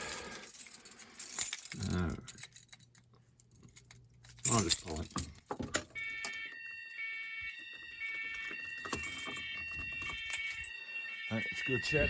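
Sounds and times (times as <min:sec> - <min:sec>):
fire alarm horns steady tones: 0:05.8 - 0:12.0
pulsing alarm tones: 0:06.0 - 0:12.0.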